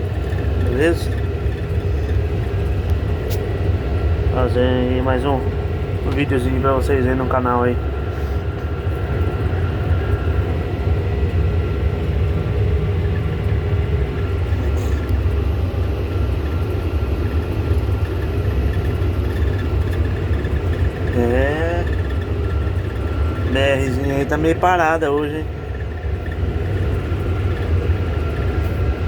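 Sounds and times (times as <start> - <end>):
tractor diesel engine rumbling: 0.0 - 29.0.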